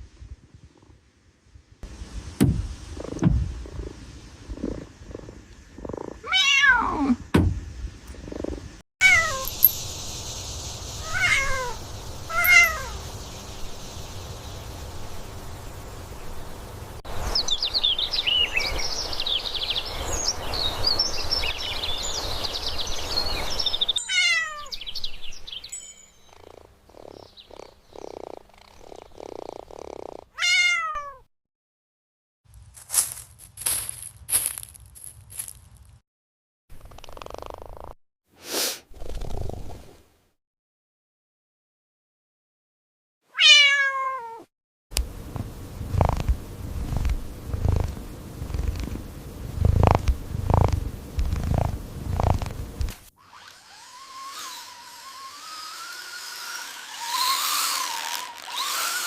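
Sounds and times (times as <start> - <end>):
steady hiss: 1.4 - 5.8, 9.4 - 24.0, 45.0 - 53.1
cat meowing: 6.2 - 7.2, 9.0 - 9.5, 11.0 - 13.0, 24.0 - 24.7, 30.4 - 31.3, 43.3 - 44.5.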